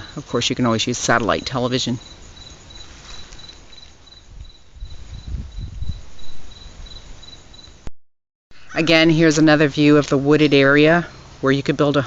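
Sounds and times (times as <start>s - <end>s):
cricket chirping: 0.0s - 7.9s.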